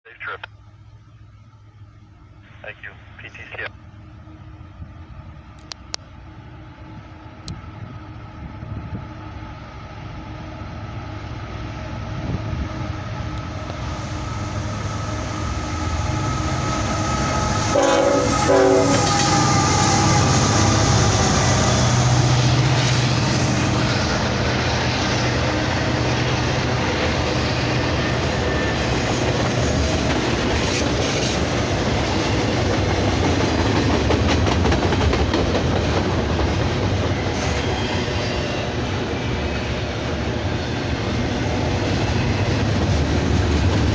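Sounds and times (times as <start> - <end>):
locomotive engine drone: 0.1 - 43.9
train horn: 15.2 - 23.3.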